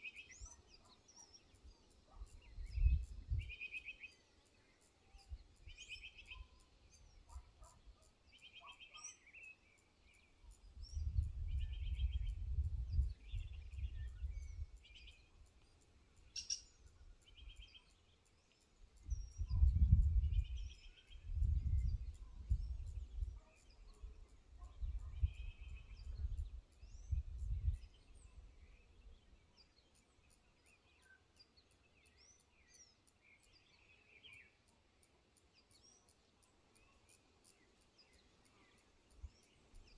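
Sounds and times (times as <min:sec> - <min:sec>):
birds chirping and trilling: 0:00.0 - 0:39.9
wind buffeting microphone: 0:02.2 - 0:03.5, 0:10.6 - 0:15.1, 0:19.0 - 0:23.4, 0:24.0 - 0:28.6.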